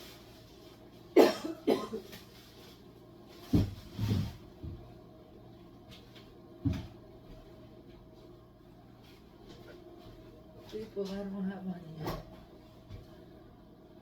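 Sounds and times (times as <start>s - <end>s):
person coughing: 1.2s - 2.1s.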